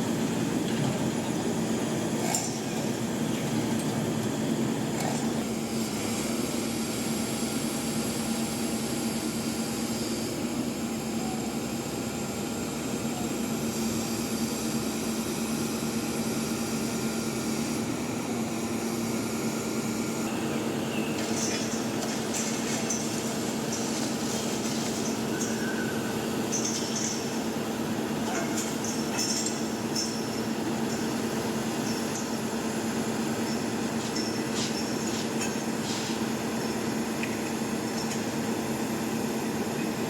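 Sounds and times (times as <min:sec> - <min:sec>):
heavy machinery engine running: 0:00.0 - 0:40.0.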